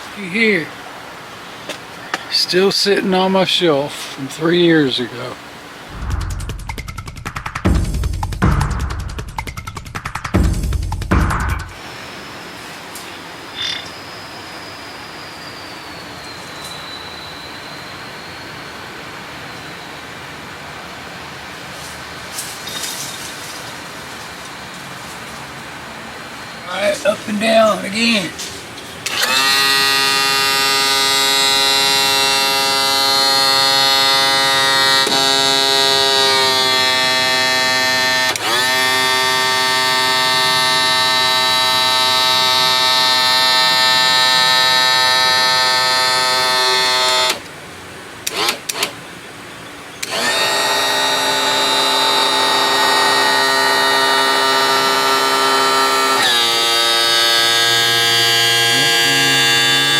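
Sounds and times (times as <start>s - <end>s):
pump motor whining: 29.0s - 47.5s, 48.2s - 49.0s, 50.0s - 59.9s.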